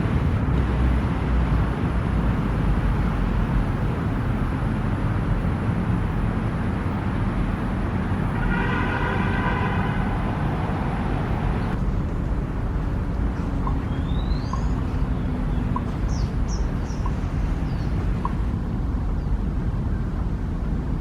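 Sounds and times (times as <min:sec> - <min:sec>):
low rumble of city traffic: 0:00.0 - 0:21.0
high bird chirps: 0:13.4 - 0:18.4.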